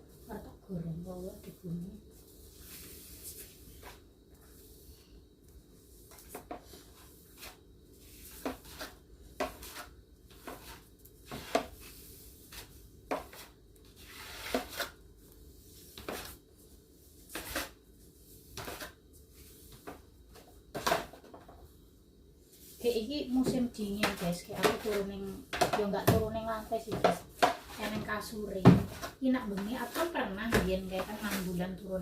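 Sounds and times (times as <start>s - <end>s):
household objects knocking and clattering: 20.7s - 21.7s.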